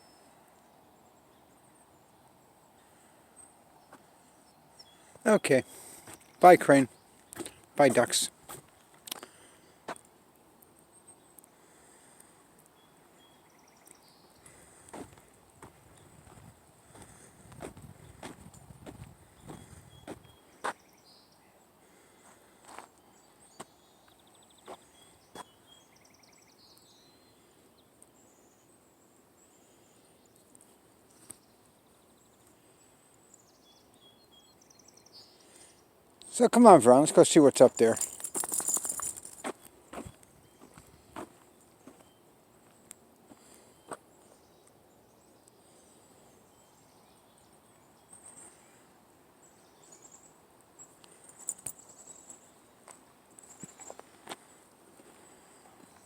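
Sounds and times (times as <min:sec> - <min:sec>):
footsteps on outdoor trail: 0:04.8 - 0:10.1, 0:13.9 - 0:20.9, 0:21.9 - 0:25.6, 0:37.5 - 0:44.6, 0:52.8 - 0:56.0
small birds trilling: 0:10.9 - 0:56.0
light high clicks and chirps: 0:12.2 - 0:14.6.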